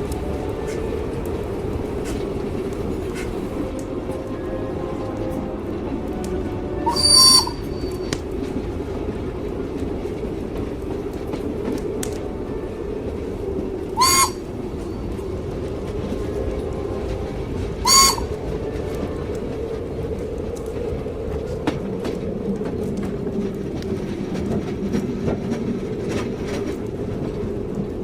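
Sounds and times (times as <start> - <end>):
train rumbling on rails: 0.0 - 28.0
short high whistle calls: 6.9 - 7.7, 14.0 - 14.4, 17.9 - 18.3.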